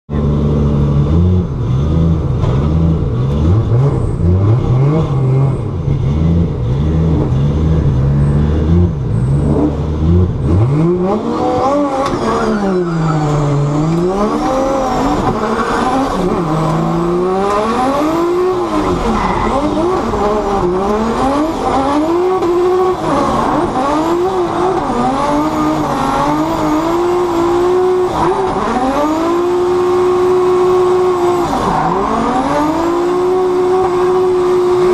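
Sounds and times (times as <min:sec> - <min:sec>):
car engine revving: 0:00.1 - 0:34.9
tyre squeal: 0:11.6 - 0:17.0, 0:18.6 - 0:20.3.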